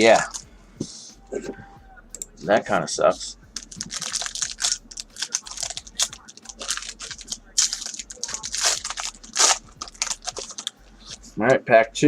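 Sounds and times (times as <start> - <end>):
foil pack rustling: 0.0 - 0.4, 3.6 - 11.2
cards clicking: 3.6 - 11.2.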